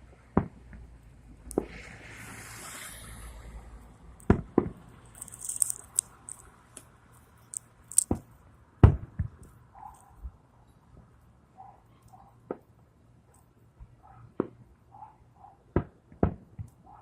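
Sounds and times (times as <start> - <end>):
fireworks crackles and pops: 0.4 - 8.3.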